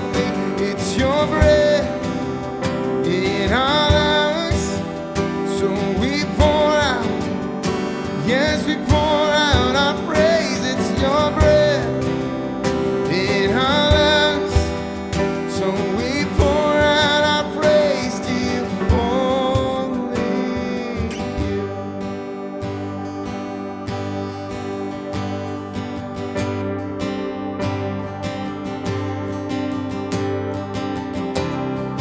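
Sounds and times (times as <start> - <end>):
acoustic guitar chords: 0.0 - 32.0.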